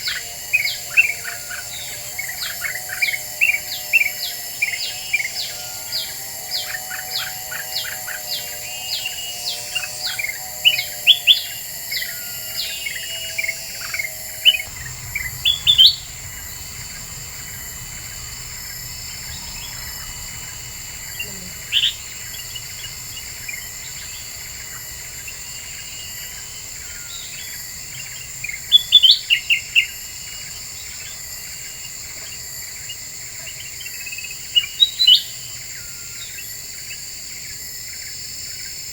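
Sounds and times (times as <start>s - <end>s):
high insect-like hiss: 0.0s - 38.9s
bird chirps and calls: 10.7s - 26.3s
bird warbling: 14.1s - 27.2s.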